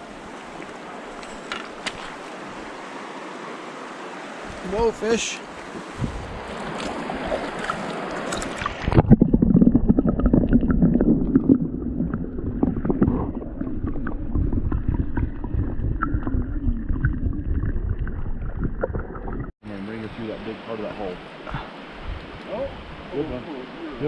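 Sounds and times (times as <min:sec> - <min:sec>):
stream water flowing: 0:00.0 - 0:09.2, 0:10.0 - 0:19.5, 0:20.2 - 0:24.0
muffled gurgling water rumble: 0:06.0 - 0:07.8, 0:08.6 - 0:19.6.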